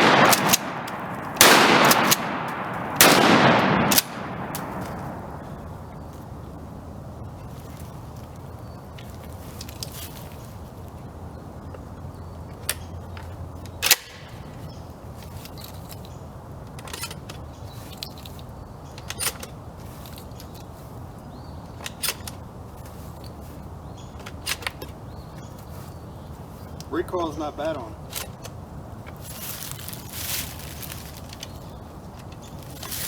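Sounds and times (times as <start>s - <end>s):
shotgun shot: 0.0s - 5.4s.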